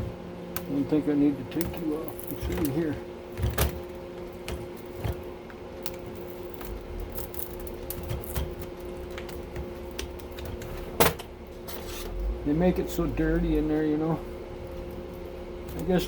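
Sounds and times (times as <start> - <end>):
steady hum: 0.0 - 16.0
hand tools clicking and scraping: 1.5 - 5.2.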